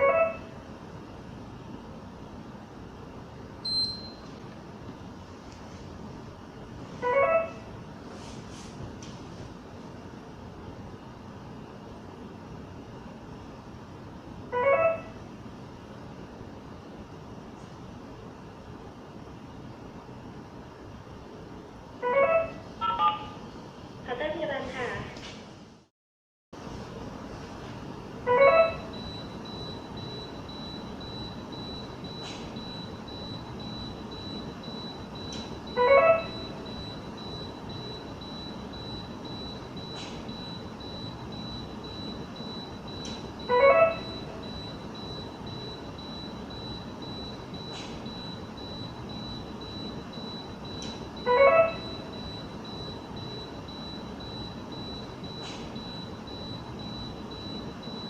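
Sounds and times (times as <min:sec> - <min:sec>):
short electronic beep: 0:03.7 - 0:04.2
steady high-pitched tone: 0:28.2 - 0:58.0.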